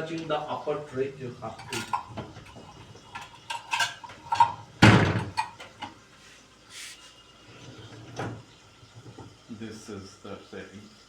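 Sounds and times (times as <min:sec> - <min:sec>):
dishwasher rack sliding on rails: 0:01.6 - 0:04.6.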